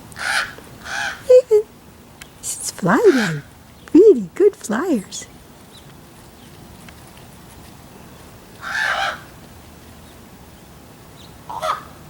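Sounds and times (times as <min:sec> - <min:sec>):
ravens calling: 0:00.0 - 0:01.7, 0:02.4 - 0:04.0, 0:08.0 - 0:09.5, 0:11.2 - 0:12.0.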